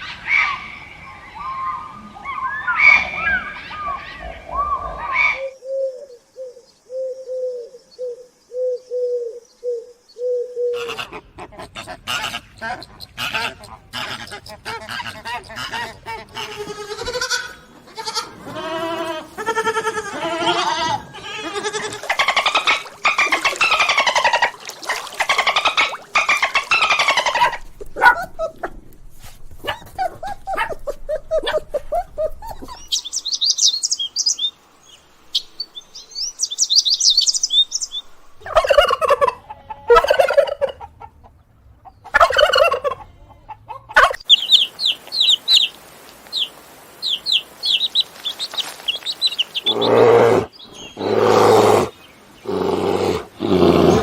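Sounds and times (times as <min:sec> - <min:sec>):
poultry harsh calls: 0:10.7 - 0:28.2, 0:47.1 - 0:54.0.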